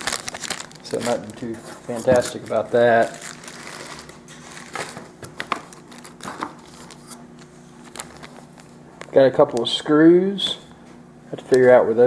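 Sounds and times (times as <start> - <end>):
plastic crinkling: 0.0 - 7.2, 7.8 - 9.8.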